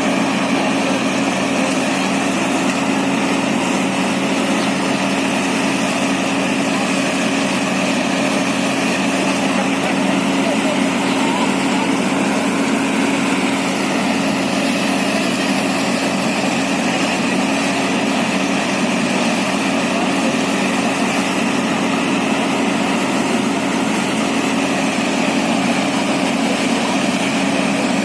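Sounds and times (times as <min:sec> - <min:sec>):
drilling rig machine drone: 0:00.0 - 0:28.0.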